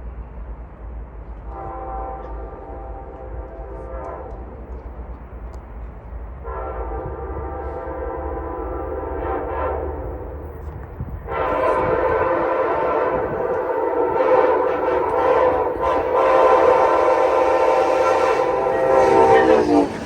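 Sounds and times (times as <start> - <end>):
locomotive air horn blasts: 1.5 - 4.5, 6.4 - 10.2, 11.3 - 20.0.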